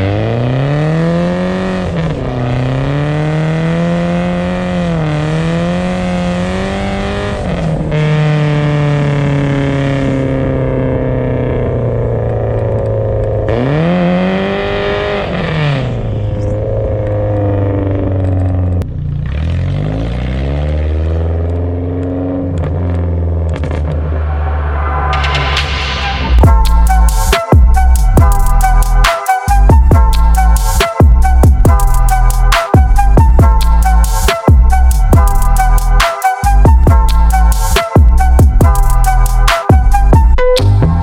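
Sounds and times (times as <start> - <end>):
car engine revving: 0.0 - 41.0.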